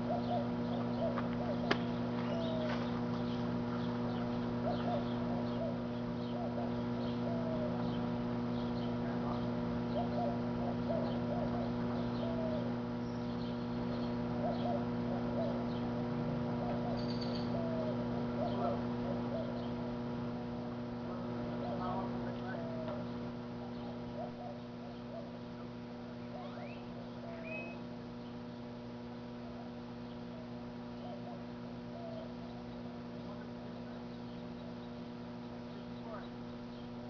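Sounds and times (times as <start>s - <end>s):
short bird calls: 0.0s - 16.0s
microwave oven humming: 0.0s - 37.0s.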